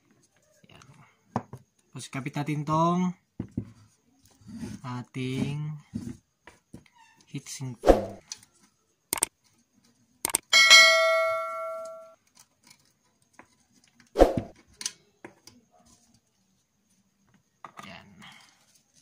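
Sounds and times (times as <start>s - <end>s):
metal object ringing: 10.5s - 12.2s.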